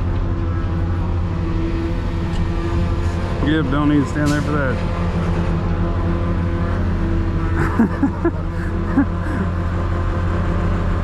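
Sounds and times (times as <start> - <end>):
diesel truck engine droning: 0.0 - 11.0.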